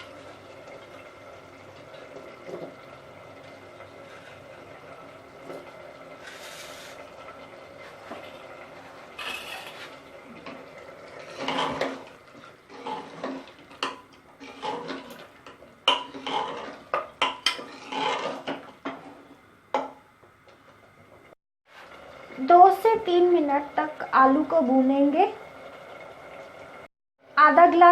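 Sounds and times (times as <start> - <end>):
spatula scraping a pressure cooker: 9.1 - 10.0, 11.2 - 15.3, 15.9 - 19.3.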